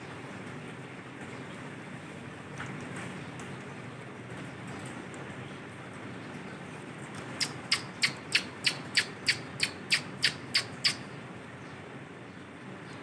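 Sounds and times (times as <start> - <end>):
parakeet squawking: 7.3 - 11.1.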